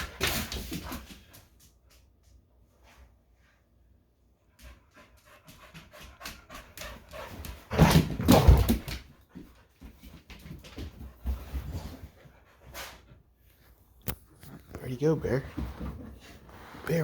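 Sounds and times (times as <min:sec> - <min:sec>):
dog panting and snuffling: 0:04.6 - 0:13.7.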